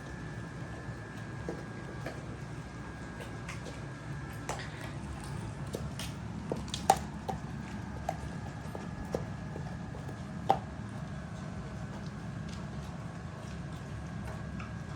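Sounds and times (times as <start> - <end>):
dog gnawing on bone: 0.0 - 14.9.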